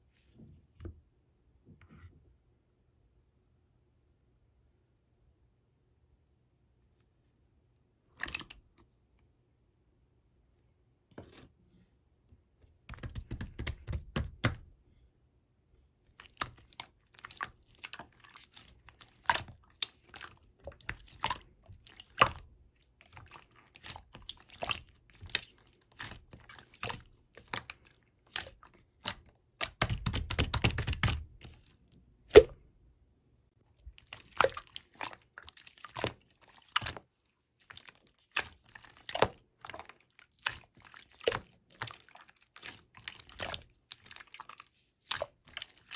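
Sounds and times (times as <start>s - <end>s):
clicks taps and crinkles: 12.6s - 14.7s, 16.1s - 32.5s, 33.8s - 45.9s.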